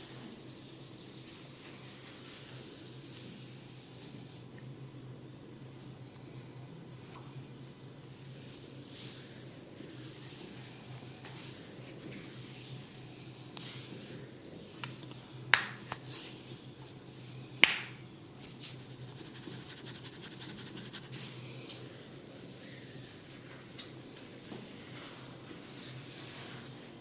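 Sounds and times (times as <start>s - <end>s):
hands rubbing hair and scalp: 8.4s - 23.5s, 25.4s - 26.9s
loud sharp snaps: 17.6s - 18.0s.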